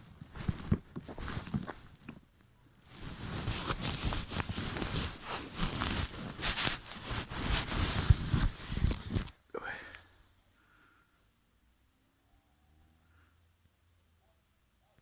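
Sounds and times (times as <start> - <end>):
footsteps crunching and scuffing: 0.0 - 9.2.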